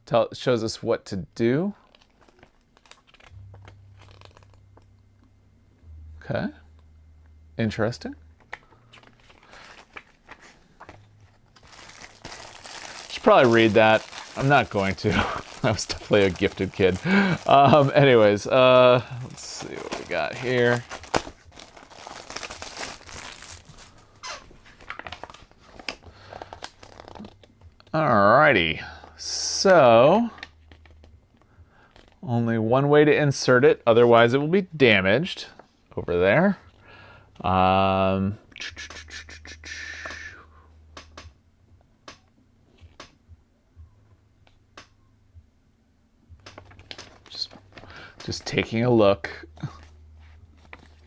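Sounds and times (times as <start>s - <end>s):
packaging crinkling and rustling: 1.8s - 4.6s, 8.7s - 27.6s, 46.5s - 48.6s, 49.7s - 51.0s.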